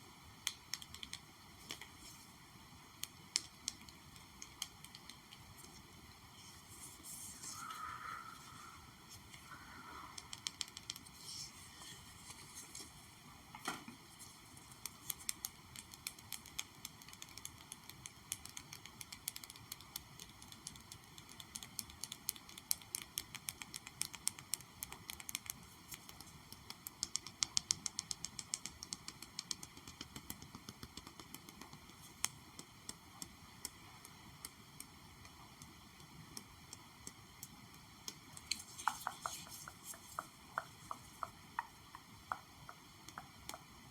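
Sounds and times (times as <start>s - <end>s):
faint steady hiss: 0.0s - 43.9s
light rapid tapping: 10.1s - 11.4s, 14.5s - 43.9s.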